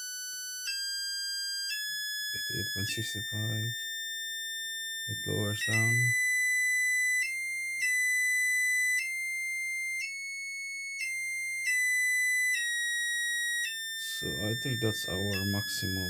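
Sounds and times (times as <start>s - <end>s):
high-pitched coil whine: 2.4s - 4.1s, 5.1s - 6.6s, 12.0s - 16.0s.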